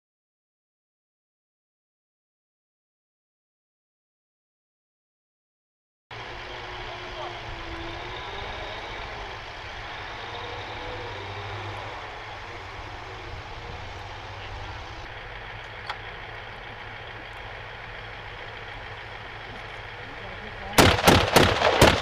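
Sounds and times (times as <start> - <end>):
heavy vehicle engine idling: 6.1 - 22.0.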